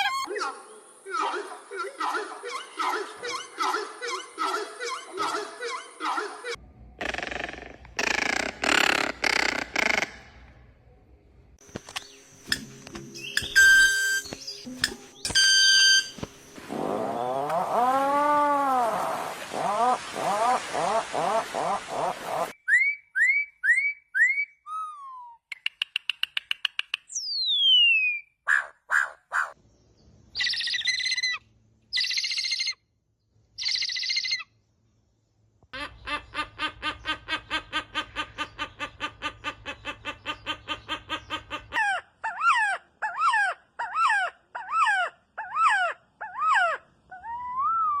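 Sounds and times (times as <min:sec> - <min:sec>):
bird chirps and trills: 0:11.9 - 0:17.5, 0:29.9 - 0:32.8, 0:33.6 - 0:34.5
bird whistling: 0:13.2 - 0:16.2, 0:27.1 - 0:28.3.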